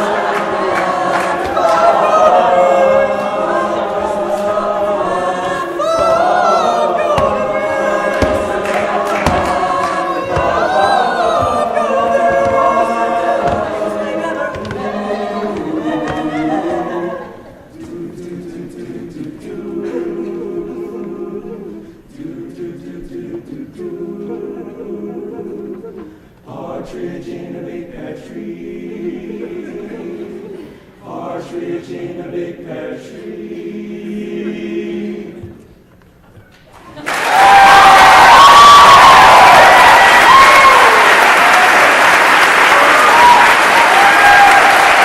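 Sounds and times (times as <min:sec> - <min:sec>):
male a cappella group singing: 0:00.0 - 0:35.8.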